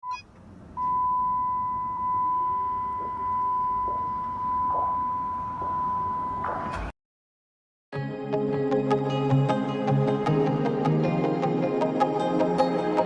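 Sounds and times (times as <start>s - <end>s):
steady electronic beep tone: 0.0s - 6.6s.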